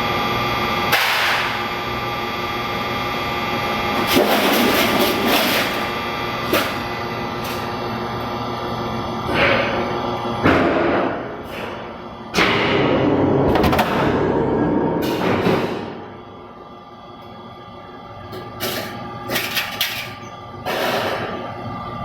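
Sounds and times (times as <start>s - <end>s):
press machine humming: 11.6s - 18.6s.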